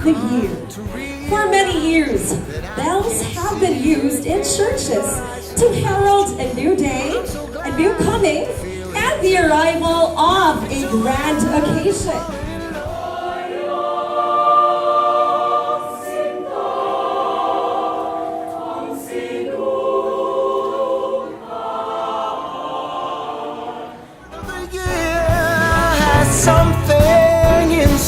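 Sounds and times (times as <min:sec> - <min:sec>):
music with bass line: 0:00.0 - 0:13.1, 0:24.3 - 0:28.0
choir singing unaccompanied: 0:00.0 - 0:28.0.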